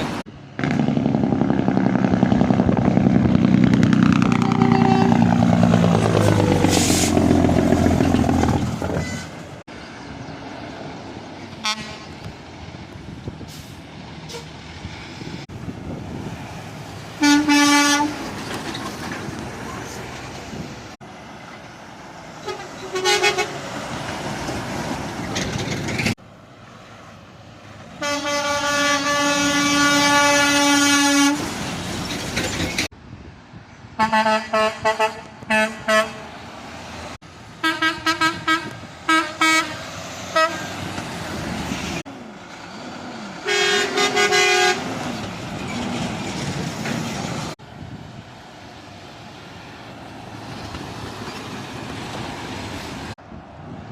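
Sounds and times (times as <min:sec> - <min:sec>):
road traffic noise: 0:00.0 - 0:53.9
truck air horn blasts: 0:04.3 - 0:05.4, 0:11.6 - 0:12.2, 0:17.2 - 0:18.2, 0:22.4 - 0:23.6, 0:28.0 - 0:31.5, 0:34.0 - 0:36.3, 0:37.6 - 0:40.8, 0:43.4 - 0:44.9.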